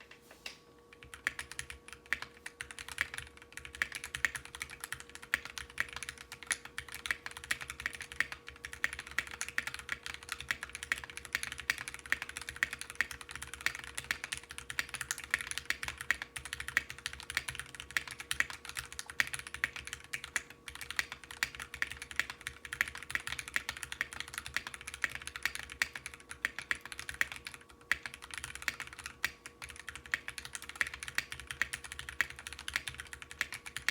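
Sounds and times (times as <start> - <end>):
fast typing on mechanical keyboard: 0.9 - 33.9.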